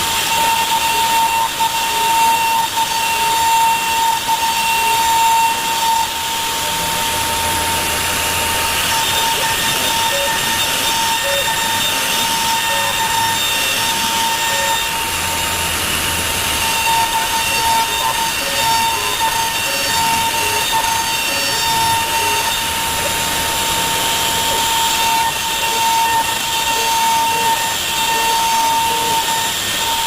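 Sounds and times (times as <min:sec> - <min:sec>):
router bit cutting wood: 0:00.0 - 0:30.0
router spindle whining: 0:00.0 - 0:30.0.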